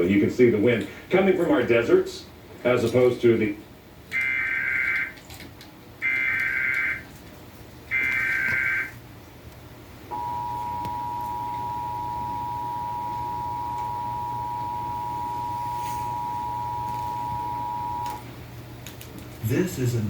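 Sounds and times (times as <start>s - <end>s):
data bursts: 10.1s - 18.2s
steady two-tone attention signal: 10.1s - 18.2s.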